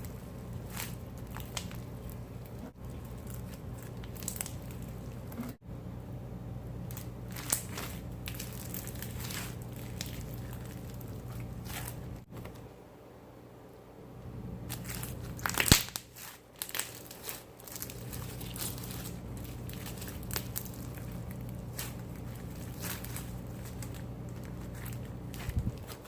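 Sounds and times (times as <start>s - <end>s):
slime squeezed with crackling pops: 14.7s - 19.0s.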